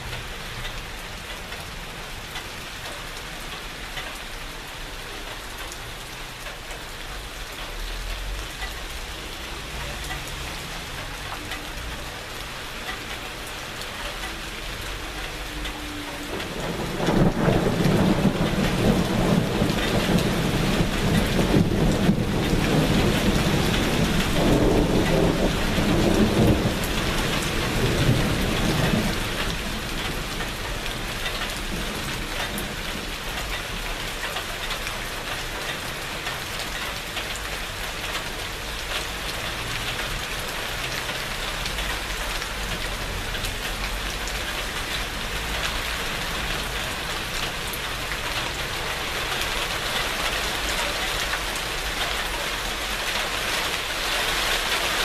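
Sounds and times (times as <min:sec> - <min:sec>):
steady rain falling: 0:00.0 - 0:55.0
thunder rumbling: 0:14.8 - 0:33.8.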